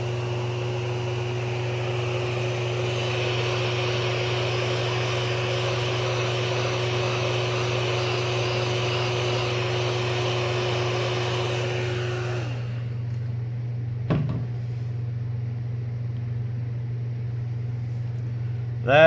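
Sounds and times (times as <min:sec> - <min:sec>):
heat gun blowing with whine: 0:00.0 - 0:15.2
steady low hum: 0:00.0 - 0:19.0.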